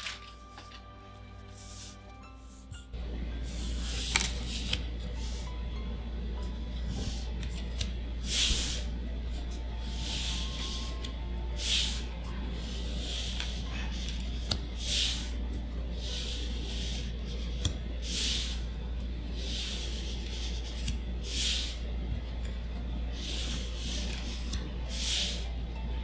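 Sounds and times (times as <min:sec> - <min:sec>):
card clicking on card: 0:00.0 - 0:01.8, 0:03.5 - 0:05.4, 0:07.0 - 0:08.9, 0:12.6 - 0:15.4, 0:16.0 - 0:18.6, 0:19.4 - 0:25.5
cards sliding papery swish: 0:00.0 - 0:02.7, 0:03.4 - 0:05.5, 0:06.8 - 0:25.6.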